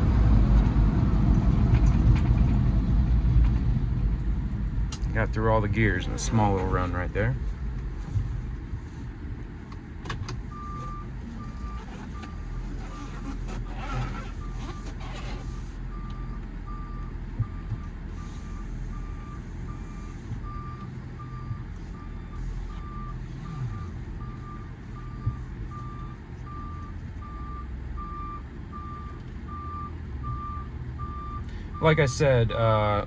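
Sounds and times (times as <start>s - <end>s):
diesel engine low rumble: 0.0s - 33.0s
truck backup alarm beeping: 10.4s - 33.0s.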